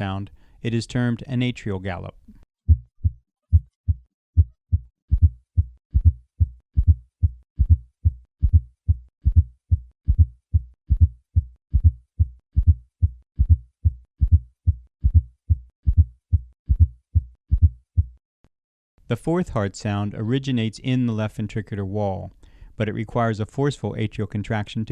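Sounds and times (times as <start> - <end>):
heartbeat thuds through stethoscope: 2.7 - 18.2.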